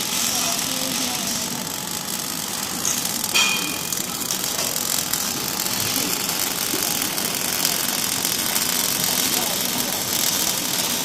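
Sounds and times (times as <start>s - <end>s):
workshop machine noise: 0.0s - 11.0s
sharp metallic clank: 3.3s - 4.0s.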